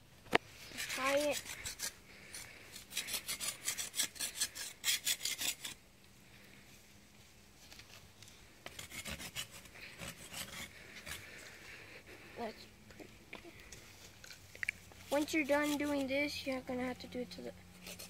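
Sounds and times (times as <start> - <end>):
rasping scrapes on wooden stick: 0.7 - 5.8, 8.7 - 11.2, 15.1 - 16.2, 17.8 - 18.0.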